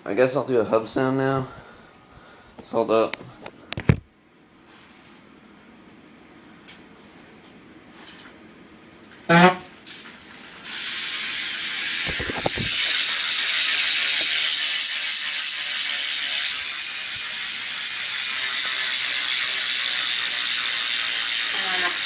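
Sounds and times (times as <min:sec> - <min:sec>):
bicycle hub ratcheting buzz: 0:09.3 - 0:22.0.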